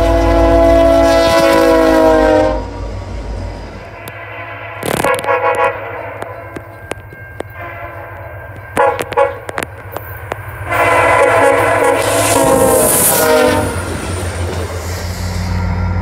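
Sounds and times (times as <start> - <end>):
locomotive air horn blasts: 0.0 - 3.0, 4.0 - 6.6, 7.4 - 9.6, 10.6 - 14.2.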